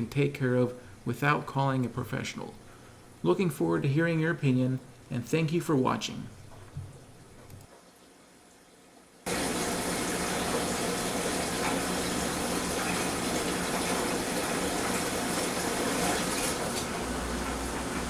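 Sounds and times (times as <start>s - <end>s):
washing machine whooshing: 9.2s - 18.0s.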